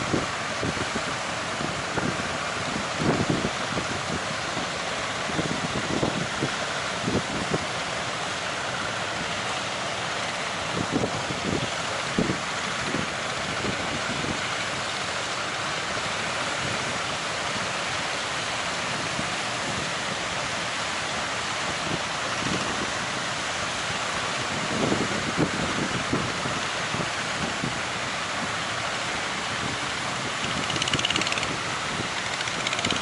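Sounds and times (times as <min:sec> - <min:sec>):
strong wind: 0:00.0 - 0:15.0, 0:15.8 - 0:33.0.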